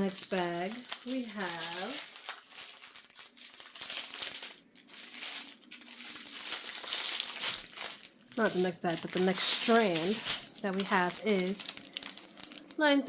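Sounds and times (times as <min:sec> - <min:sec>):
plastic bags crinkling: 0:00.0 - 0:13.0.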